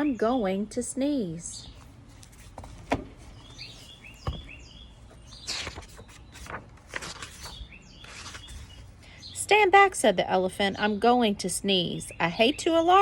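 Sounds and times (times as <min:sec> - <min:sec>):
small birds chirping: 0:01.2 - 0:02.0, 0:03.2 - 0:06.6, 0:07.2 - 0:13.0
sharp knocks: 0:04.2 - 0:04.6
brief rustle: 0:05.4 - 0:08.8.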